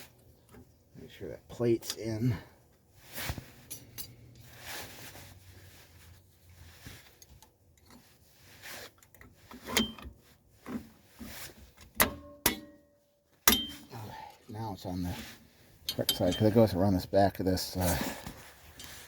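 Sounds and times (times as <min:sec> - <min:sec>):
sharp metal clinks: 0:13.5 - 0:14.0.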